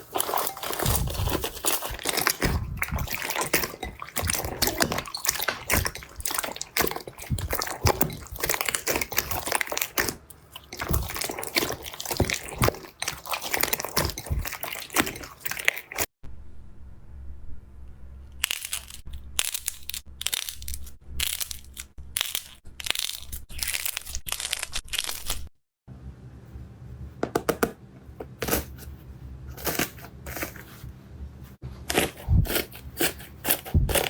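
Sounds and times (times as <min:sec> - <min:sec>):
slime crackling and popping: 0:00.0 - 0:16.0, 0:18.4 - 0:25.4
low hum: 0:16.2 - 0:18.4.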